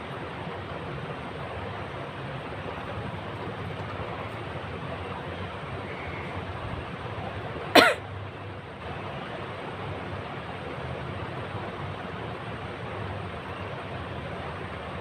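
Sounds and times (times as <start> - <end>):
steady background hiss: 0.0 - 15.0
person sneezing: 7.8 - 8.0.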